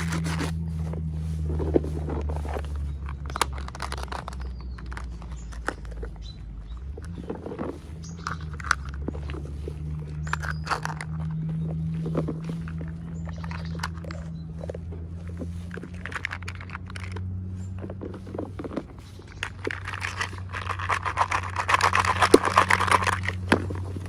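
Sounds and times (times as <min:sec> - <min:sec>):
packaging crinkling: 0:00.0 - 0:06.2, 0:15.5 - 0:17.2, 0:18.2 - 0:24.0
low hum: 0:00.0 - 0:24.0.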